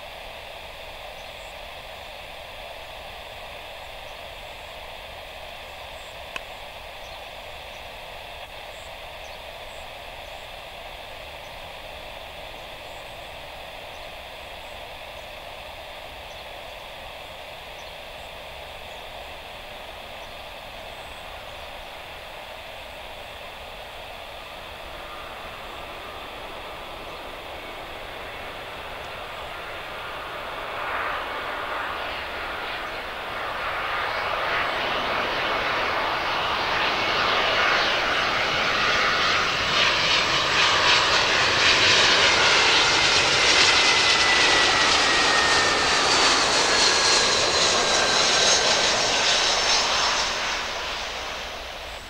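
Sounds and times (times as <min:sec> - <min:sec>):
radio static hiss: 0:17.7 - 0:38.7.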